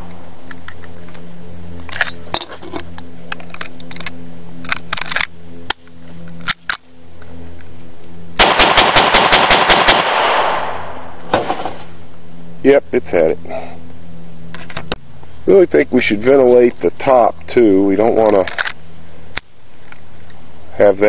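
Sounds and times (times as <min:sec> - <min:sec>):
steady low hum: 0:00.0 - 0:21.0
pistol shots: 0:08.4 - 0:11.9.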